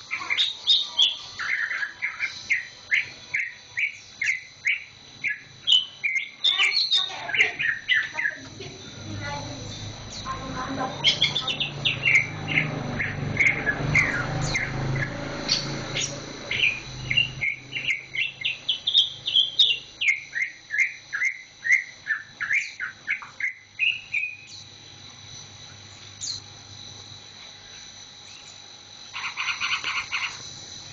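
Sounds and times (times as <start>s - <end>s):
bird singing fast chirps: 0.0s - 24.7s, 25.4s - 26.5s, 29.2s - 30.4s.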